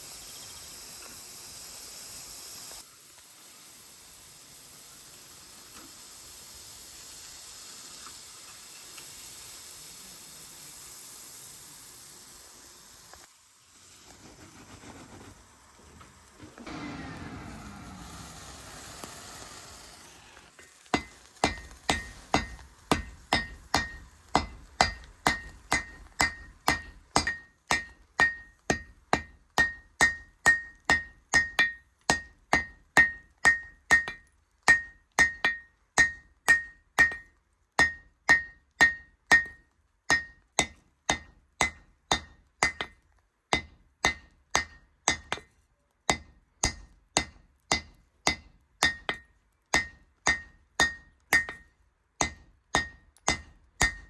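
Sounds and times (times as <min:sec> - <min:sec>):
hammer ringing on anvil: 0:21.9 - 0:37.2, 0:49.8 - 0:54.0.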